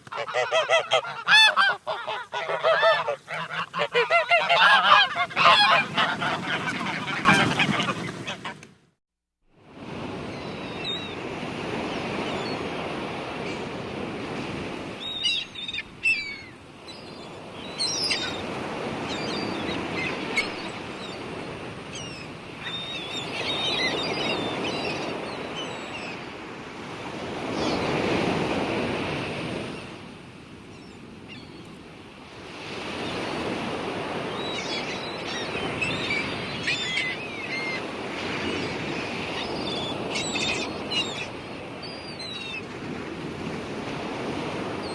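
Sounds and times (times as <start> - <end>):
surf washing in: 9.6 - 31.3, 32.0 - 44.9.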